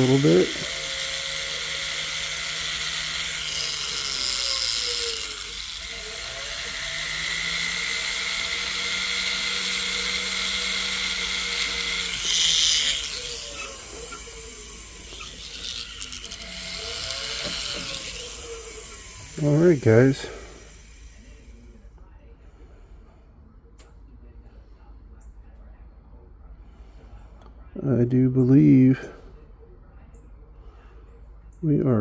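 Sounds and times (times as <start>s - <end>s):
grinding hiss on metal: 0.0s - 21.6s
rotary tool motor hum: 0.0s - 21.8s.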